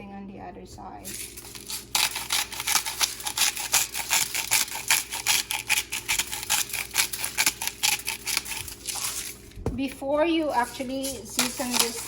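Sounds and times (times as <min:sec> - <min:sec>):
spice shaker rattling: 0:01.0 - 0:09.4.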